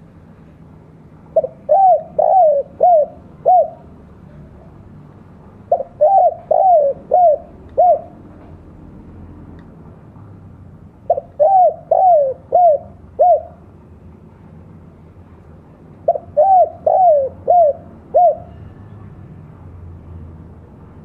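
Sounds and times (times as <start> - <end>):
dove cooing: 1.3 - 4.0, 5.7 - 8.4, 11.1 - 13.6, 16.0 - 18.7.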